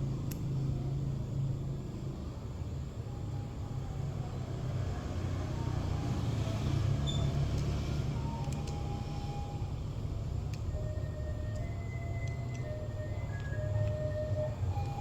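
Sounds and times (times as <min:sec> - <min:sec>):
low engine rumble: 0:08.0 - 0:15.0
faint small clicks: 0:08.4 - 0:08.8, 0:10.5 - 0:10.7.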